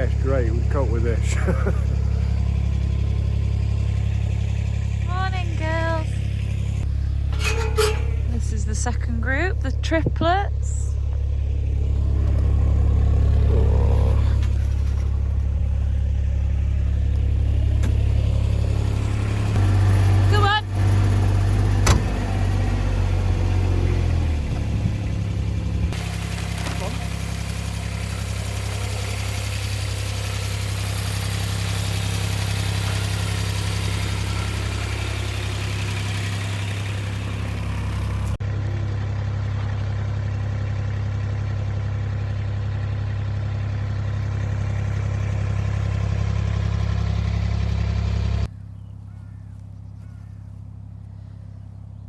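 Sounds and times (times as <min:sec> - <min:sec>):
tractor engine running: 0:00.0 - 0:52.0.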